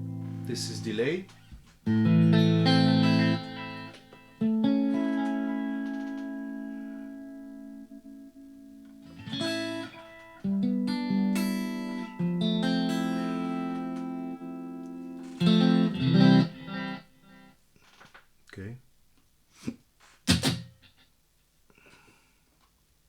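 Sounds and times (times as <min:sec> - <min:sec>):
electric guitar chords with delay: 0:00.0 - 0:17.5.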